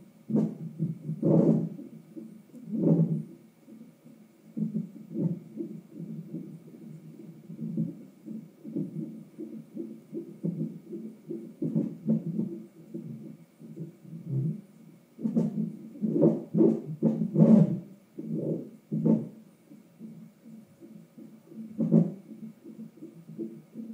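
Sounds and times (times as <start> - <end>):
fetal heartbeat whooshing pulses: 0.0 - 23.9
louder thumps from monitor: 21.8 - 22.2.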